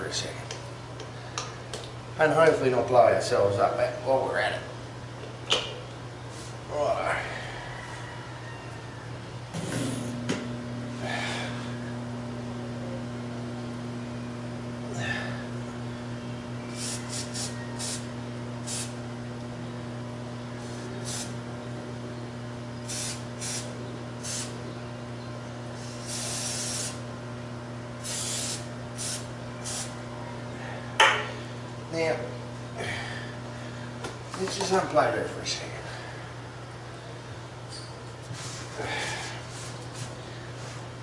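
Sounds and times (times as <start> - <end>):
short hissing bursts: 16.7 - 19.0, 20.6 - 21.4, 22.8 - 24.6, 25.8 - 27.0, 28.0 - 30.0.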